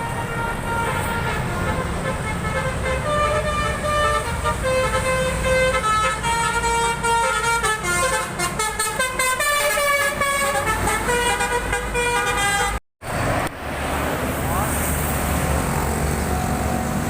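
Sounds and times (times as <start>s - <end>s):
bus horn playing melody: 0.0s - 12.8s
bus engine rumble: 0.0s - 17.0s.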